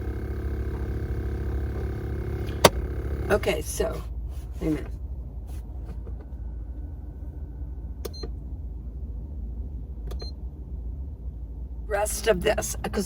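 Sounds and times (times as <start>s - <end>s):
portable fridge humming: 0.0s - 3.6s.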